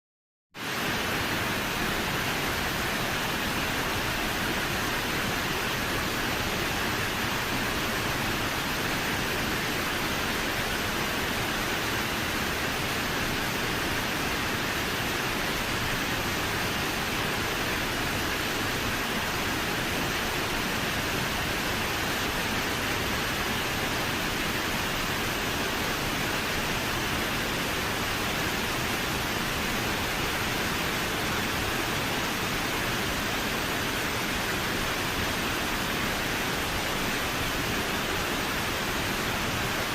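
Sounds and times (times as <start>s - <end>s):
waterfall rushing: 0.6s - 39.9s.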